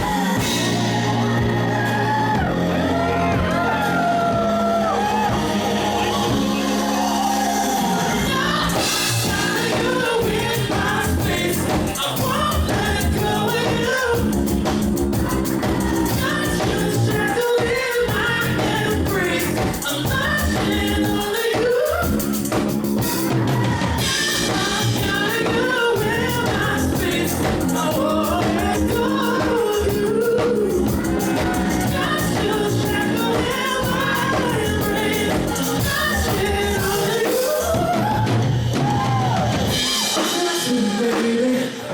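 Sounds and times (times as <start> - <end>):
drum beat: 0.0 - 5.7, 8.3 - 41.7
bass: 0.0 - 41.9
person singing: 0.0 - 41.9.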